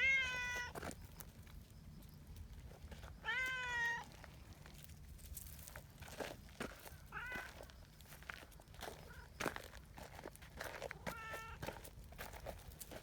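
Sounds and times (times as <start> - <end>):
cat meowing: 0.0 - 0.8, 3.2 - 4.1, 7.1 - 7.5, 11.1 - 11.6.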